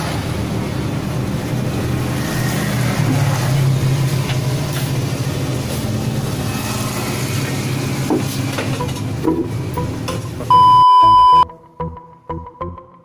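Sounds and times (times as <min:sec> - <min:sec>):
loud high beep: 0:10.5 - 0:11.4.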